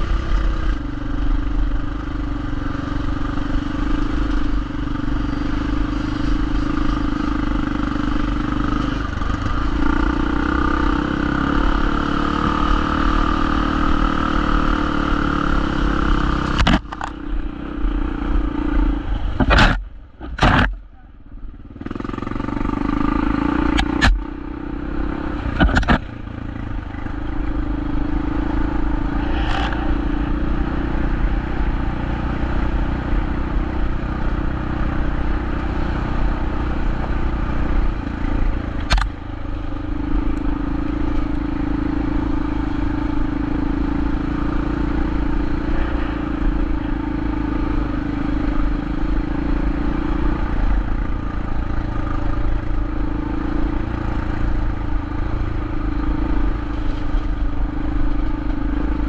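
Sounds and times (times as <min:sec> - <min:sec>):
motorcycle engine running: 0:00.0 - 0:59.0
rushing noise: 0:28.1 - 0:32.2.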